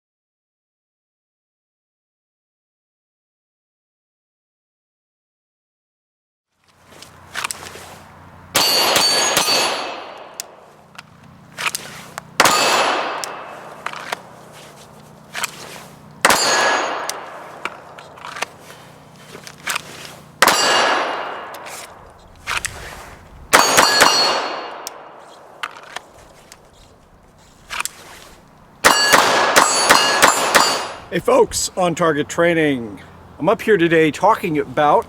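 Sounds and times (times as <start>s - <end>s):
pistol shots: 8.6s - 10.6s, 12.4s - 14.3s, 16.2s - 17.8s, 20.4s - 21.7s, 23.5s - 25.2s, 28.8s - 31.0s
steel plate clanging: 16.3s - 17.5s, 28.9s - 31.1s.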